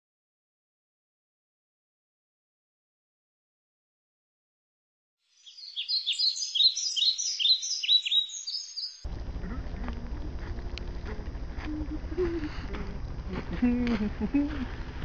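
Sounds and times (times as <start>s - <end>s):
songbird chirping: 5.3s - 14.6s
low outdoor rumble: 9.1s - 15.0s.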